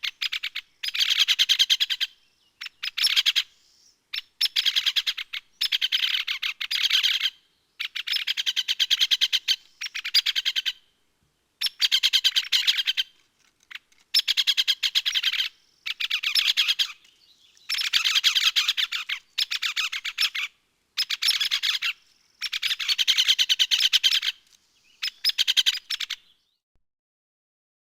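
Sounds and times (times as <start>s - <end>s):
woodpecker rattling: 11.6s - 26.1s.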